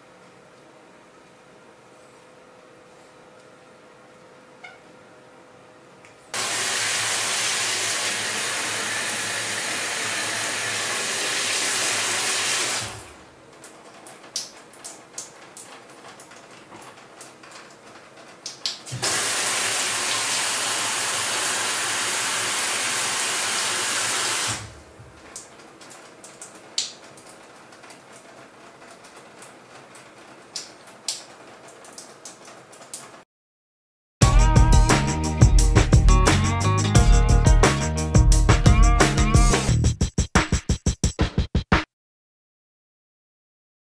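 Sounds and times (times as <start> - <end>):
shower head spraying water: 6.4 - 13.1, 18.9 - 24.7
water dripping: 13.6 - 16.5, 18.4 - 18.9, 30.4 - 33.1.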